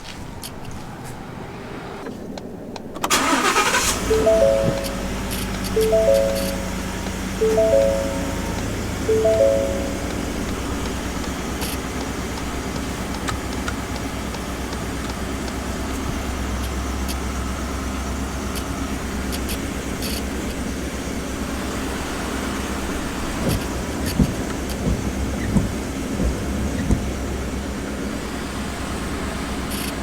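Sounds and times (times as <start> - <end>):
pickup engine idling: 3.1 - 29.9
short chime: 4.0 - 10.5.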